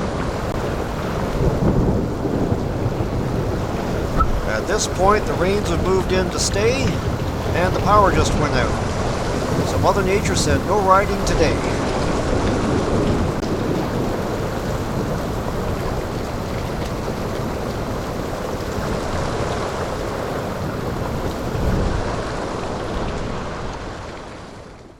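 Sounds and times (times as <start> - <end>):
low rumble of thunder: 0.0 - 5.0, 11.6 - 24.1
heavy rain falling: 0.0 - 24.9.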